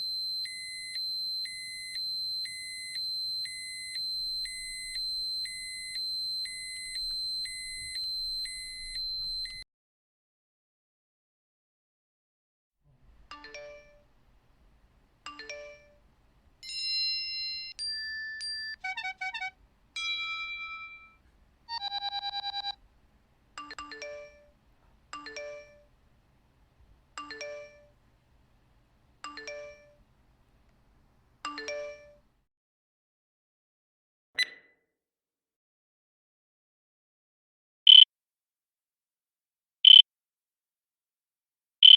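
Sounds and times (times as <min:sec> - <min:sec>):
electronic beeps and ringtones: 0:00.0 - 0:09.6, 0:20.1 - 0:22.8.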